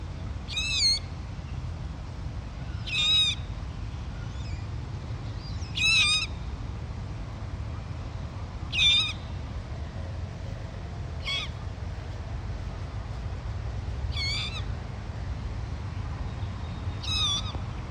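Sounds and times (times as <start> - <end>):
bird chick squeaky calls: 2.7 - 3.4, 5.5 - 6.3, 8.7 - 9.3, 11.2 - 11.6, 14.1 - 14.7, 17.0 - 17.6.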